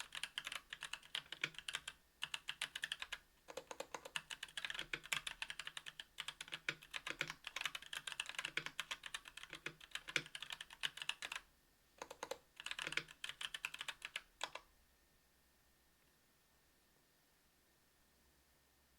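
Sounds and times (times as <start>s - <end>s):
mechanical keyboard typing: 0.0s - 11.4s, 12.0s - 14.7s.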